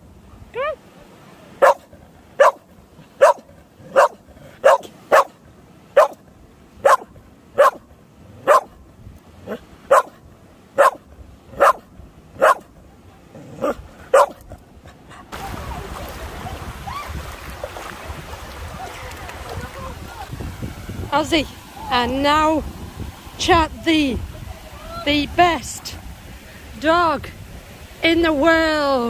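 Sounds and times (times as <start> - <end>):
dog barking: 1.6 - 2.6, 3.2 - 5.4, 6.0 - 6.2, 6.8 - 7.8, 8.4 - 8.8, 9.5 - 10.2, 10.8 - 11.0, 11.6 - 12.7, 13.6 - 14.4
steady rushing noise: 15.3 - 29.0.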